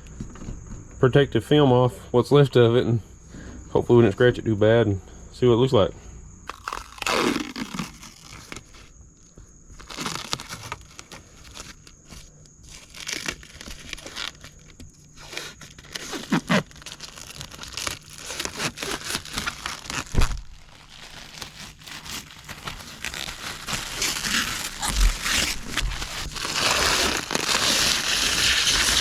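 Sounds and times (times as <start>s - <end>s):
plastic film crackling and tearing: 6.5s - 8.9s, 9.8s - 29.0s.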